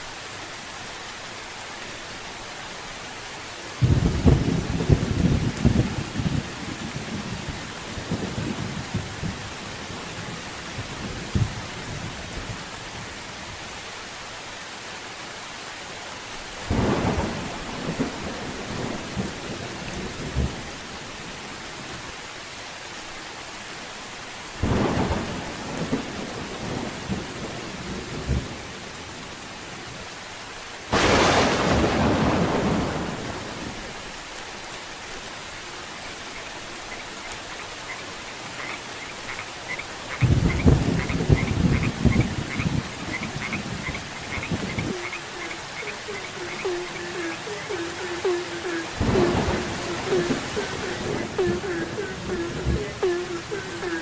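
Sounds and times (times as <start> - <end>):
steady rain: 0.0 - 54.0
thunder claps: 30.9 - 33.9, 40.2 - 54.0.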